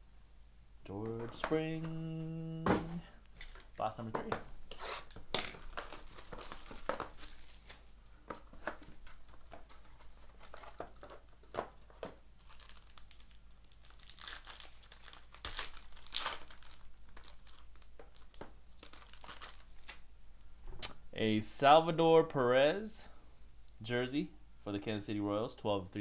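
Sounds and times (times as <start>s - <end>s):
cardboard packaging rustling: 4.7s - 20.0s
plastic wrap crinkling and tearing: 5.5s - 7.9s, 8.7s - 20.0s.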